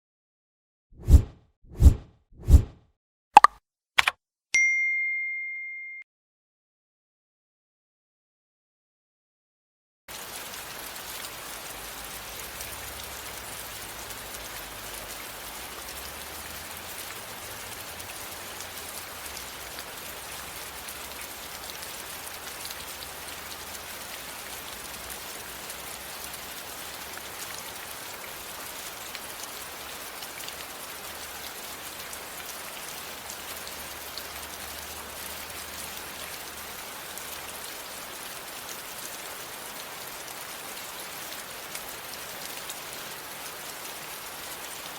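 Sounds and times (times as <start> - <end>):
rain falling: 10.1 - 44.9.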